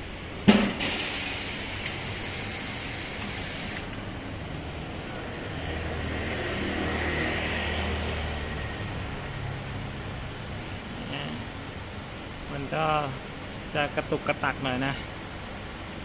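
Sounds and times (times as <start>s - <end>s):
compressed air hissing: 0.0s - 4.2s.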